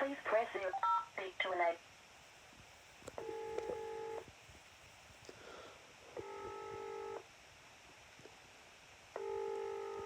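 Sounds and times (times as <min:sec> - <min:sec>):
telephone ringing tone: 0:03.2 - 0:04.2, 0:06.2 - 0:07.2, 0:09.2 - 0:10.0.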